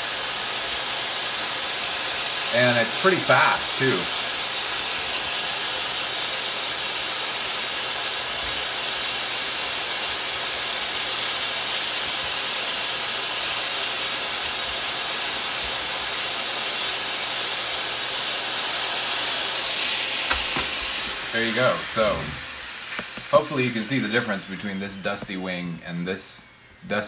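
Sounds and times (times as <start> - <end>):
vacuum cleaner running: 0.0 - 27.0
vacuum brush brushing: 18.4 - 26.7.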